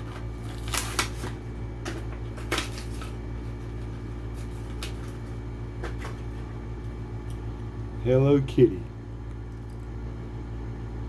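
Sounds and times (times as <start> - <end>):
plastic packaging crinkling: 0.0 - 5.4
low electrical hum: 0.0 - 11.0.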